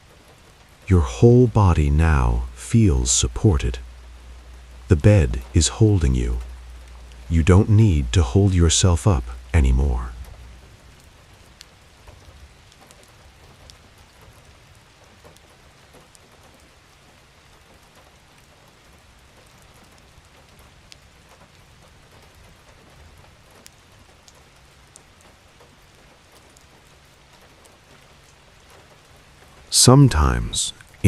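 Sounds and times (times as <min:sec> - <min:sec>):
rain hissing: 0:00.0 - 0:14.0, 0:26.6 - 0:31.0
raindrops striking nearby: 0:00.0 - 0:31.0
low steady rumble: 0:00.8 - 0:11.1, 0:29.8 - 0:31.0.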